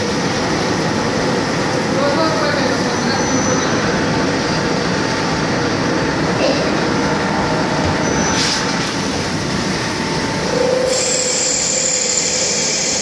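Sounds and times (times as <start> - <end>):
faint machine whines: 0.0 - 13.0
lathe running: 9.2 - 13.0.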